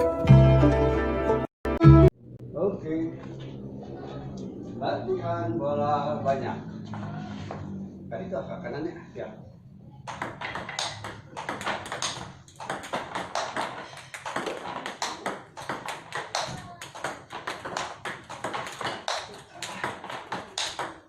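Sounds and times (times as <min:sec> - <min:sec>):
table tennis balls clicking: 0:10.0 - 0:21.0.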